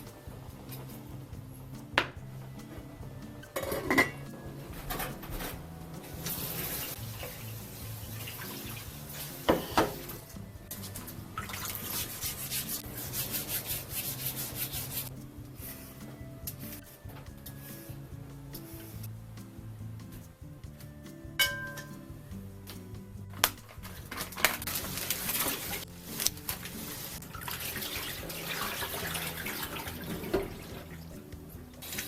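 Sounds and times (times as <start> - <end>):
rhythmic rubbing or rinsing: 0.0 - 32.0
dishes knocking and clinking: 3.6 - 4.2, 21.4 - 22.0
tap water running in sink: 6.2 - 10.2, 11.3 - 12.8, 24.7 - 31.1.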